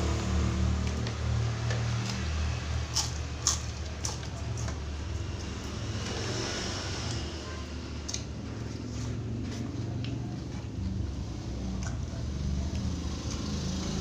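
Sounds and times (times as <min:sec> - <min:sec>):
sharp eating crunches: 0:01.6 - 0:07.3.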